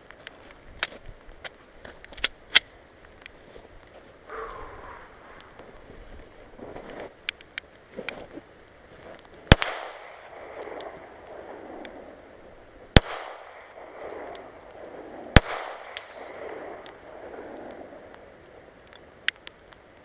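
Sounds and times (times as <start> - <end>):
faint sharp cracks: 0.0 - 5.8, 9.0 - 12.2, 12.9 - 20.0
pistol shots echoing: 9.5 - 11.8, 13.0 - 17.6.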